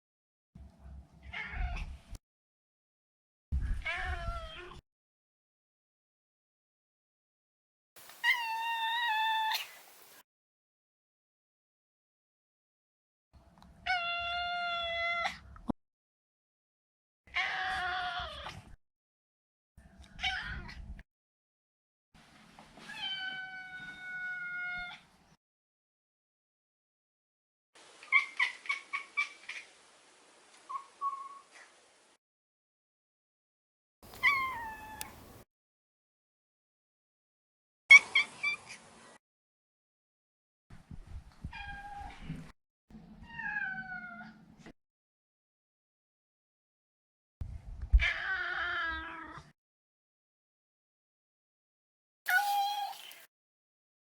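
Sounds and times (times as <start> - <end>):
cat meowing: 8.2 - 9.8, 34.1 - 35.2, 52.3 - 53.2.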